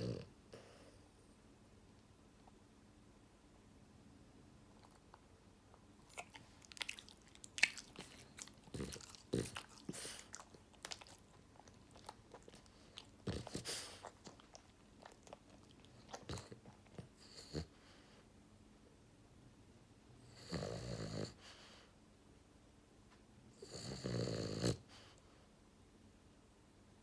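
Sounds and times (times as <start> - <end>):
dog mouth clicking and smacking: 6.1 - 17.0.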